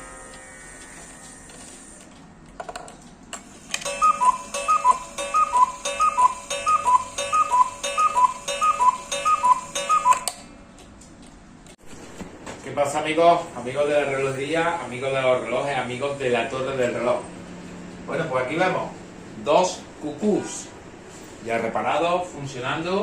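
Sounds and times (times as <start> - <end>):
clock ticking: 3.8 - 10.4
cuckoo clock calling: 3.8 - 10.4.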